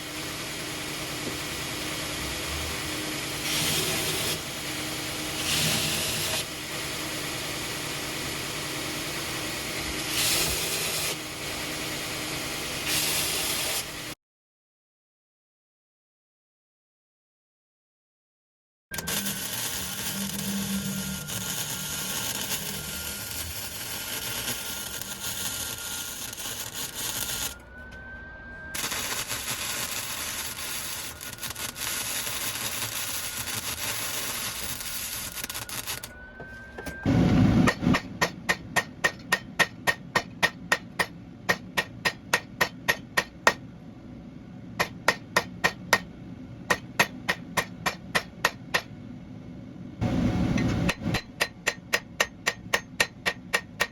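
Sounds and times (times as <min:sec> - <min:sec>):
hammer striking steel on anvil: 0:35.5 - 0:43.6, 0:44.8 - 0:46.1, 0:46.7 - 0:48.9, 0:50.5 - 0:53.9.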